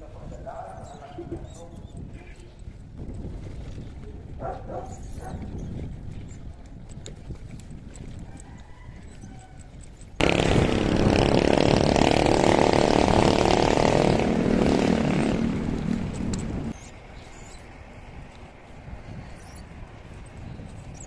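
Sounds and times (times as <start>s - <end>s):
engine running loudly: 10.2s - 16.7s.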